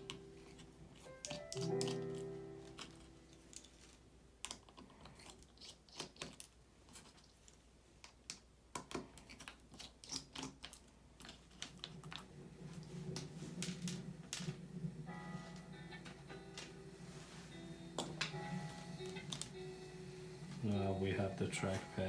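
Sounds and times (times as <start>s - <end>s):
background music: 0.0s - 4.3s, 12.7s - 22.0s.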